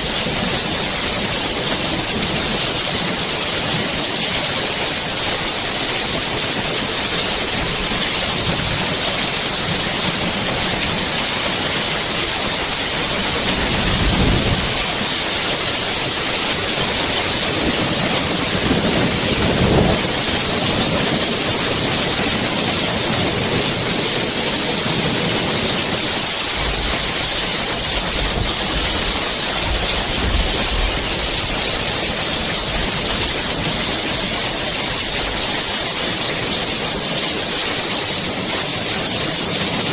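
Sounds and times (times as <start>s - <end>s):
heavy rain falling: 0.0s - 39.9s
low rumbles: 7.4s - 35.7s.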